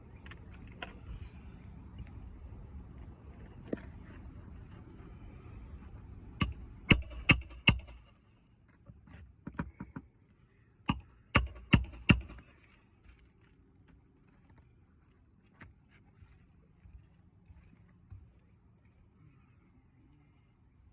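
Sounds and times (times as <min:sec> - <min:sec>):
hammer striking nails: 0:06.4 - 0:08.0, 0:10.9 - 0:12.4.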